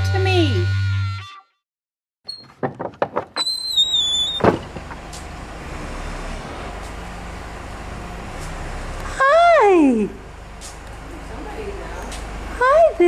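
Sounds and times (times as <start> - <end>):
door hinge squeal: 2.3 - 2.6, 3.3 - 5.0
barn door rattling knocks: 2.3 - 5.1
door bang: 2.4 - 5.3
low background noise: 4.0 - 13.0.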